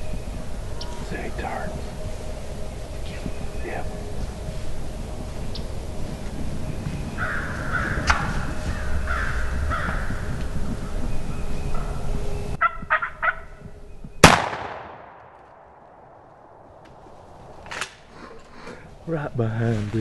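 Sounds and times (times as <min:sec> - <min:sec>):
turkey gobbling: 0:12.6 - 0:13.6
shotgun blast: 0:14.2 - 0:16.1.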